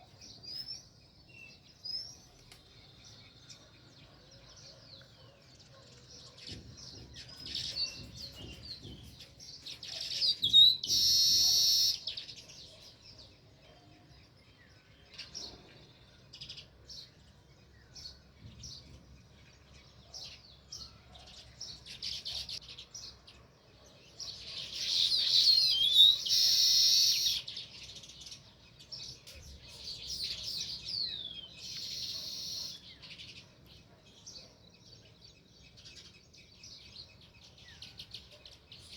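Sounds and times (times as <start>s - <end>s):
sparrows chirping: 0.0s - 38.9s
sparrows rapid chattering: 0.0s - 38.9s.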